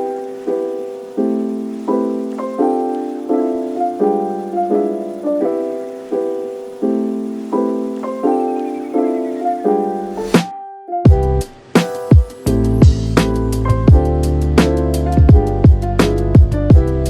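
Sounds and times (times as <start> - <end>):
soft piano chords: 0.0 - 17.0.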